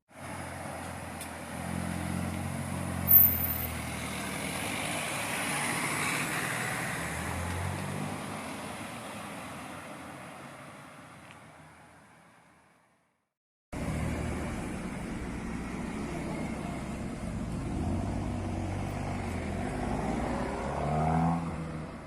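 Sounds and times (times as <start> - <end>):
car engine driving past: 13.8 - 22.0.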